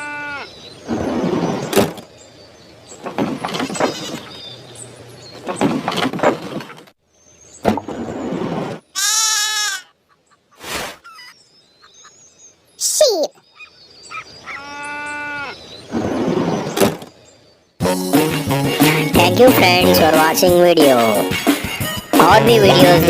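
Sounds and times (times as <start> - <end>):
sheep bleating: 0.0 - 0.5, 14.5 - 15.6
horse calling: 13.6 - 15.7.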